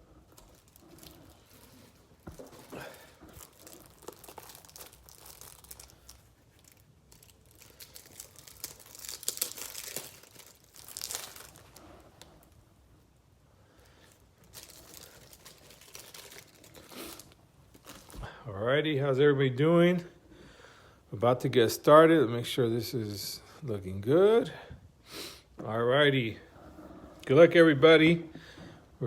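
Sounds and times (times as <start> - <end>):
plastic wrapping crinkling and tearing: 0.0 - 12.6, 14.0 - 18.3.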